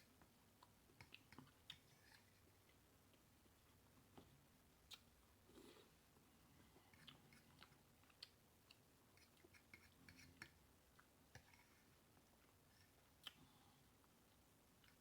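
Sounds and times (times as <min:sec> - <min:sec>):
chewing with wet mouth clicks: 0:00.2 - 0:05.1, 0:06.8 - 0:11.6, 0:12.2 - 0:13.5.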